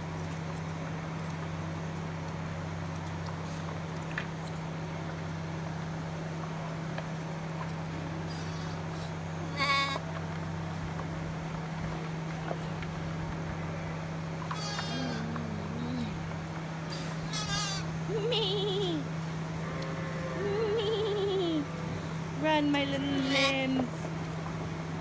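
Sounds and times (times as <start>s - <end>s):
steady low hum: 0.0s - 25.0s
lamb bleating: 8.3s - 10.0s, 14.6s - 15.6s, 16.9s - 17.9s, 23.1s - 23.6s.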